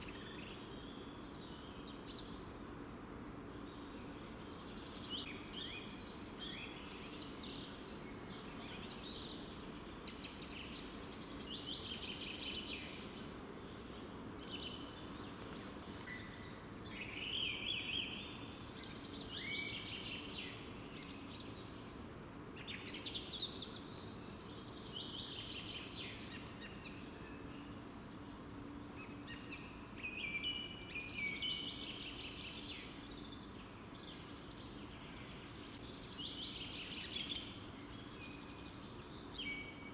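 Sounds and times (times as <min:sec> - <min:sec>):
low background noise: 0:00.0 - 0:39.9
songbirds chirping and trilling: 0:00.0 - 0:39.9.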